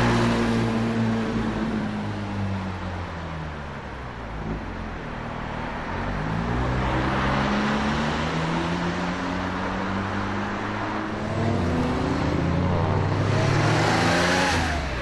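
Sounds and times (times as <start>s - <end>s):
sports car engine revving: 7.4s - 15.0s.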